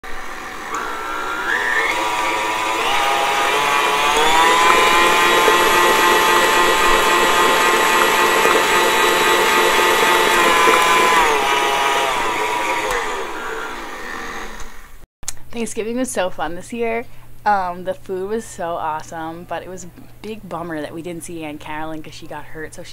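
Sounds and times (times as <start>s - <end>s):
kitchen appliance motor whining: 0.0s - 15.0s.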